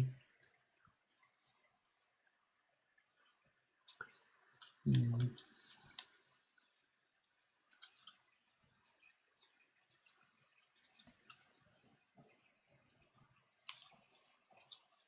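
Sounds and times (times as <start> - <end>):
small tools clicking and tapping: 13.7 - 14.0.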